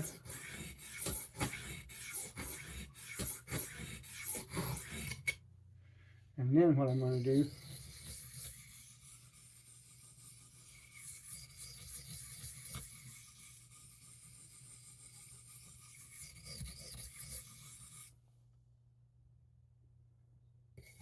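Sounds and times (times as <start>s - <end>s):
knife blade scraping on sharpening stone: 0.0s - 5.4s, 6.9s - 18.1s.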